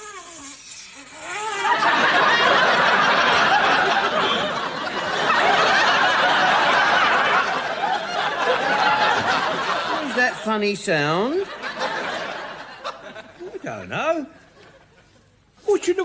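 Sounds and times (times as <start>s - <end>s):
studio audience laughing: 1.6s - 10.5s, 11.2s - 13.4s.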